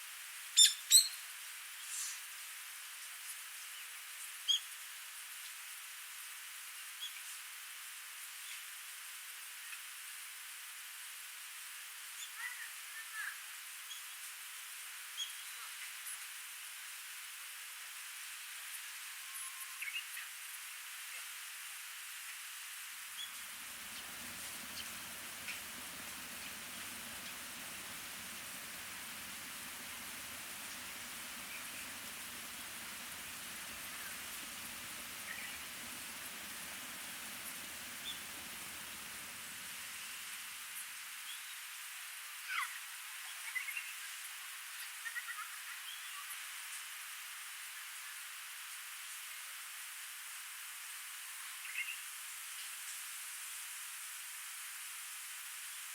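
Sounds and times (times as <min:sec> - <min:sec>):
bird chirps: 0:00.6 - 0:01.2, 0:28.1 - 0:38.5
small stream flowing: 0:01.2 - 0:55.9
stream rushing: 0:23.6 - 0:39.8.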